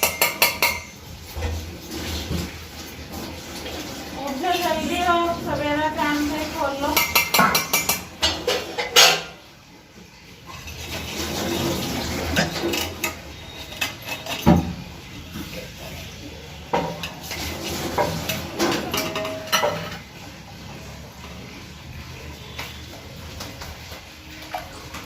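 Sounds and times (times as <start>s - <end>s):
dishes and utensils clinking: 0.0s - 25.0s.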